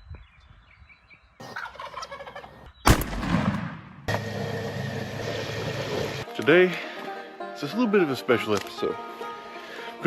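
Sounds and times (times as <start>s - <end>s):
turkey gobbling: 1.4s - 2.7s
shotgun blast: 2.9s - 4.2s.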